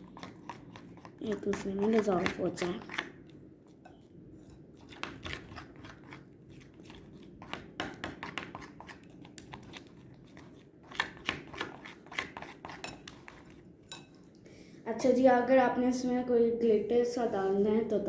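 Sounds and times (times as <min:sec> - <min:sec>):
utensil scraping a bowl: 0:00.0 - 0:14.2.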